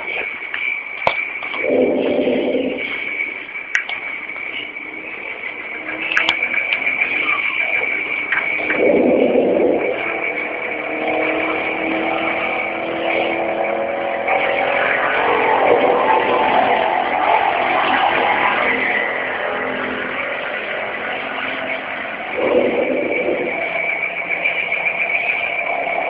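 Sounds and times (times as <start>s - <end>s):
thin high whine: 0.0s - 26.0s
small motor running: 4.7s - 13.6s.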